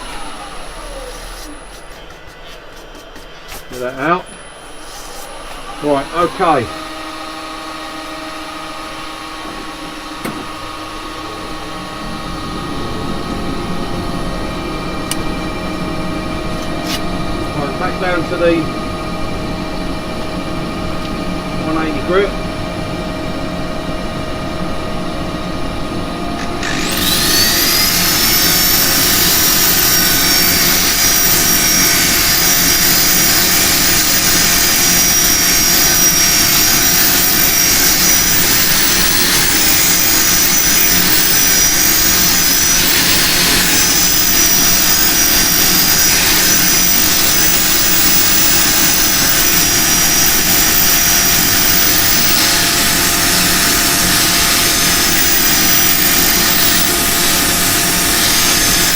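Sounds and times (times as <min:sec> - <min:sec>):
electric motor whine: 0:00.0 - 0:58.9
lathe humming: 0:00.0 - 0:58.9.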